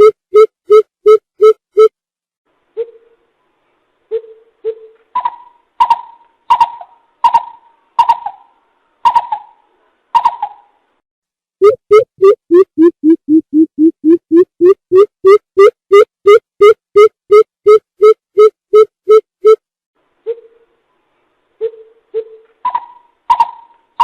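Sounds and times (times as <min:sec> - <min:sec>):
bird harsh calls with clicks: 0:04.2 - 0:08.5, 0:09.1 - 0:09.6, 0:10.2 - 0:10.7, 0:21.6 - 0:24.0.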